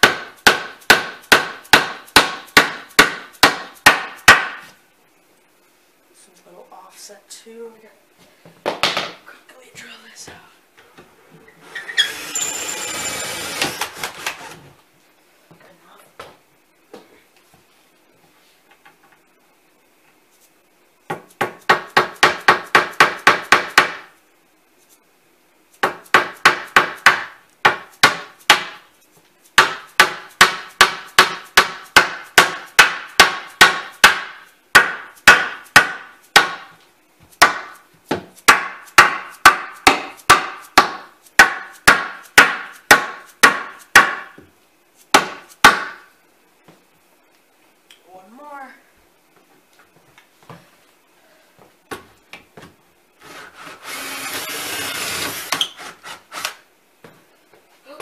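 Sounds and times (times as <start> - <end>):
hammer striking wood: 0.0 - 4.7, 21.1 - 24.1, 25.8 - 28.8, 29.6 - 36.8, 37.4 - 44.5, 45.1 - 46.1.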